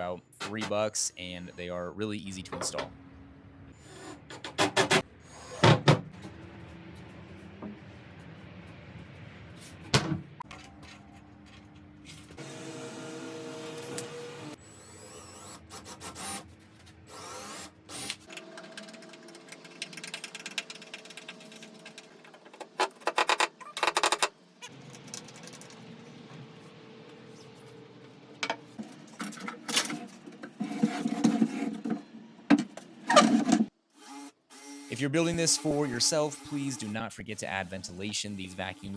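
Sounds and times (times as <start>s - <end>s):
power drill running: 12.4s - 16.4s, 33.9s - 36.9s, 37.5s - 38.1s.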